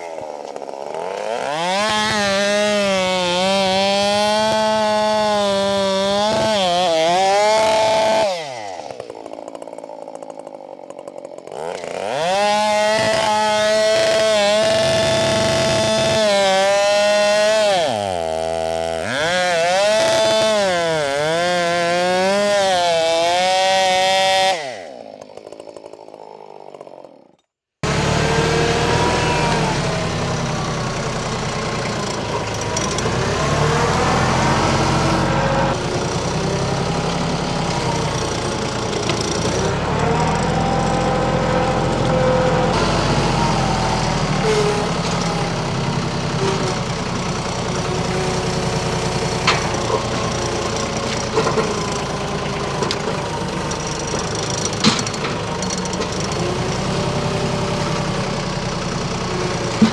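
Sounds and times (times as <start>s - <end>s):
tractor diesel engine under load: 0.0s - 9.6s, 11.1s - 24.8s, 27.8s - 59.9s.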